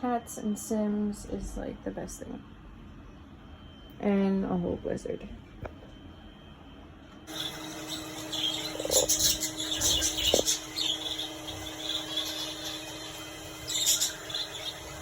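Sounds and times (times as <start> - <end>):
steady low hum: 0.0 - 15.0
pet birds chirping: 7.3 - 15.0.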